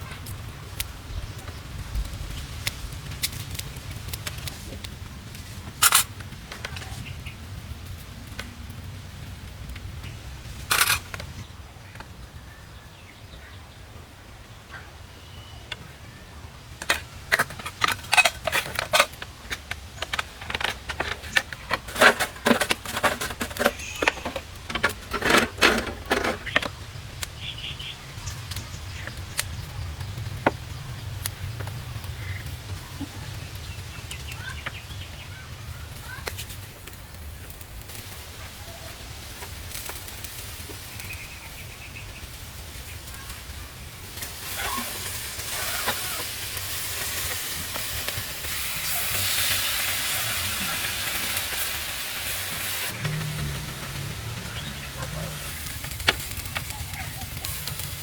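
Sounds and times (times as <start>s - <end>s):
steady low rumble: 52.9s - 58.0s.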